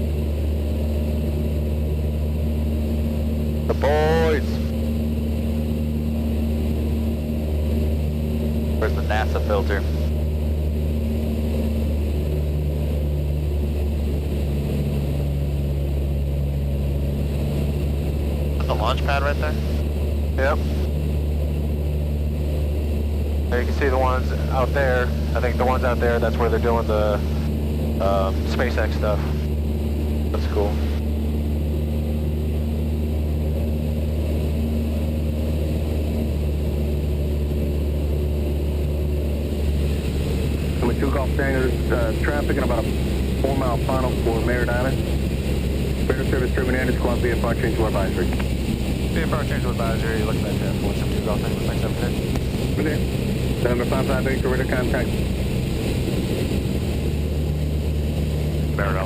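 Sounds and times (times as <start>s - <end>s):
propeller plane engine droning: 0.0s - 59.0s.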